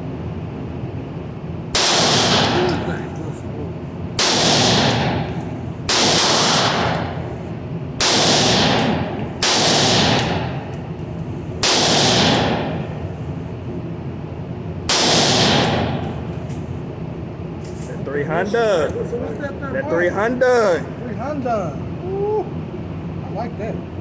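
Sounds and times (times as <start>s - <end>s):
gunshots with echo: 1.8s - 3.1s, 4.2s - 7.3s, 8.0s - 10.7s, 11.6s - 13.0s, 14.9s - 16.2s.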